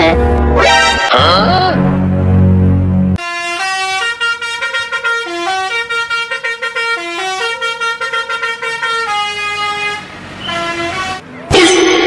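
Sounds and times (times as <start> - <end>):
bus musical air horn tune: 1.8 - 11.3.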